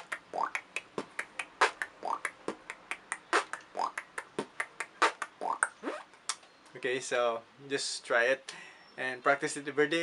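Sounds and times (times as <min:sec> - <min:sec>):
beatbox hi-hat clicks: 0:00.0 - 0:05.8
beatbox snare hits: 0:00.0 - 0:05.8
rising tongue squeaks: 0:00.0 - 0:06.5.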